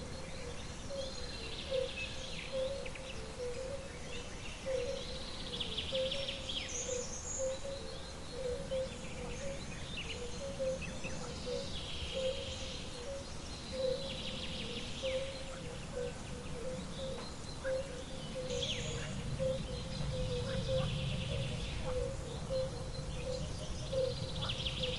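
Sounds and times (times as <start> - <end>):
birds chirping and trilling: 0.0 - 24.9
steady background hiss: 0.0 - 24.9.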